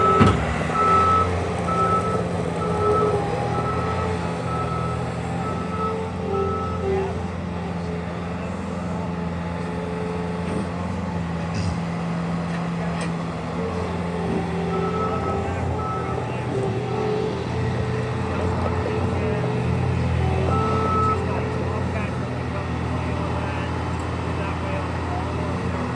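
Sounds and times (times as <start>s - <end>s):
backup alarm beeping: 0.0s - 6.9s, 14.6s - 16.4s, 20.2s - 22.1s
diesel engine running: 0.0s - 25.9s.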